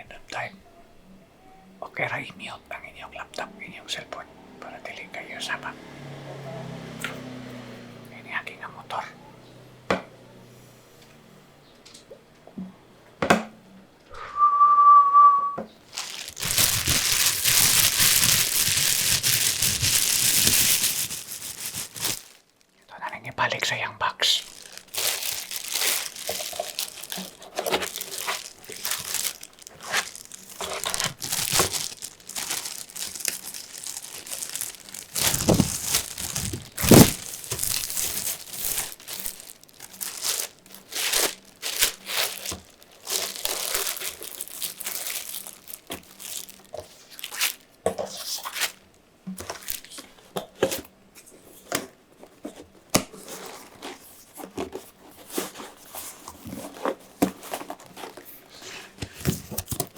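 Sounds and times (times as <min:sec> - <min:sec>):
wrapping crinkling and tearing: 0:15.8 - 0:22.9, 0:23.5 - 0:50.9, 0:52.4 - 0:59.9.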